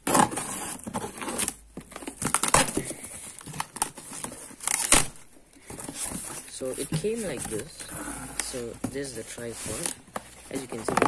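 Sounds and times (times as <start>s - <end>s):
packaging wrap crinkling and tearing: 0.0s - 5.3s.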